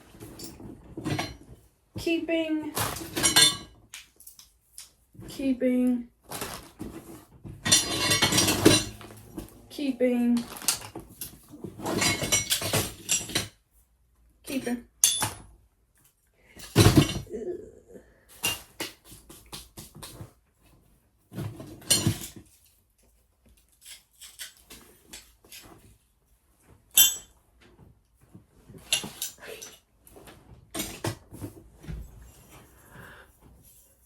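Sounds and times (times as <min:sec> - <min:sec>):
tools clinking and rattling: 0:02.8 - 0:05.0, 0:07.6 - 0:09.7, 0:10.4 - 0:13.6, 0:15.0 - 0:15.5, 0:21.7 - 0:22.6, 0:23.5 - 0:25.8, 0:26.9 - 0:27.4, 0:28.8 - 0:29.9
rustling: 0:06.2 - 0:09.7, 0:10.3 - 0:12.2.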